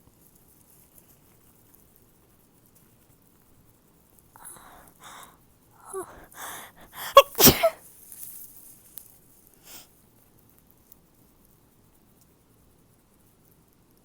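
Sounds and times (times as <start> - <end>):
breathy exhale: 4.4 - 5.3, 5.9 - 7.8
catching intakes of breath: 4.4 - 7.8
short sniff: 5.9 - 7.8
woman sneezing: 5.9 - 7.8.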